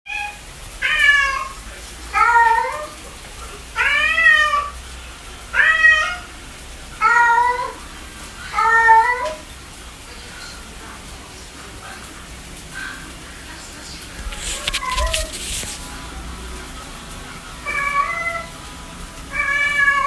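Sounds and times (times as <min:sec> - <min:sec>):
cat meowing: 0:00.1 - 0:03.0, 0:03.8 - 0:04.8, 0:05.5 - 0:06.3, 0:07.0 - 0:07.8, 0:08.5 - 0:09.4, 0:14.2 - 0:15.7, 0:17.6 - 0:18.5, 0:19.3 - 0:20.0.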